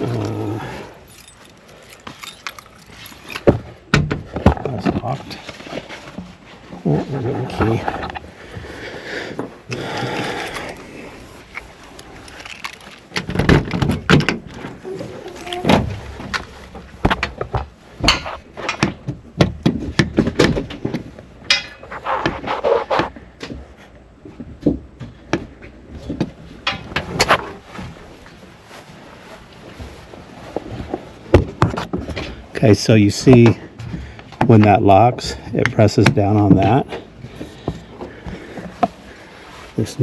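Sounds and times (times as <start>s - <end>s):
latch lock clicking and rattling: 0.9s - 3.6s.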